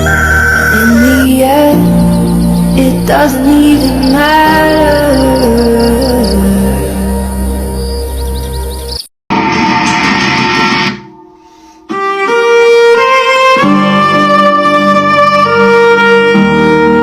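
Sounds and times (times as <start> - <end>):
instrumental background music: 0.0 - 9.0, 11.4 - 17.0
string melody of long held notes: 11.9 - 17.0.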